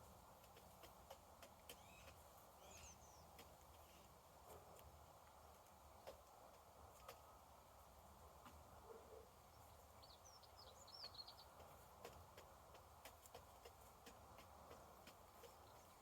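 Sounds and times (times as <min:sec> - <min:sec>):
small bird chirping: 0:00.6 - 0:04.2, 0:09.4 - 0:16.0
light ticks: 0:11.4 - 0:16.0.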